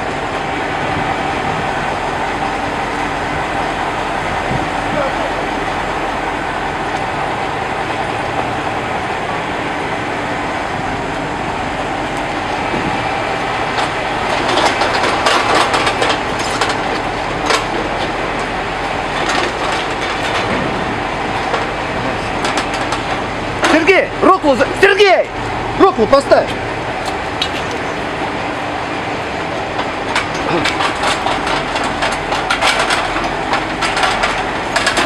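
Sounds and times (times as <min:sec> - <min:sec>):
diesel engine running: 0:00.0 - 0:35.0
knocks and clatter: 0:13.7 - 0:18.5, 0:19.1 - 0:24.1, 0:29.8 - 0:35.0.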